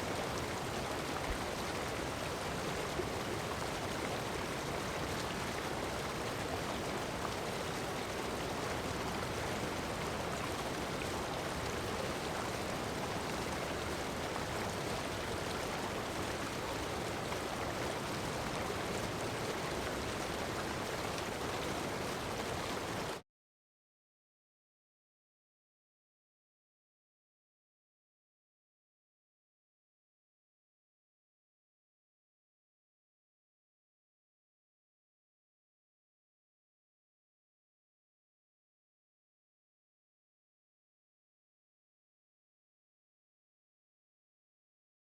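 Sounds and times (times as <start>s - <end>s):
heavy rain on sand: 0.0s - 23.2s.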